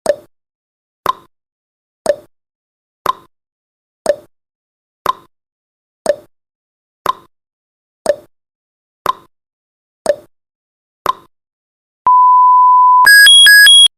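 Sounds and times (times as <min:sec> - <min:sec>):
steady high beep: 0:12.1 - 0:13.9
timer ticking: 0:13.0 - 0:13.9.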